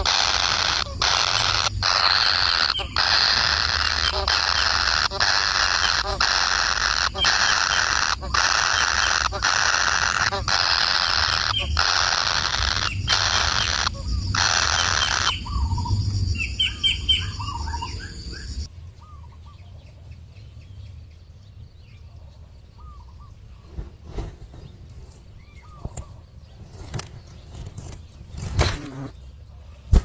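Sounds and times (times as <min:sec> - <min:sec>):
loud harsh bursts: 0:00.0 - 0:15.5
small birds chirping: 0:00.0 - 0:23.8.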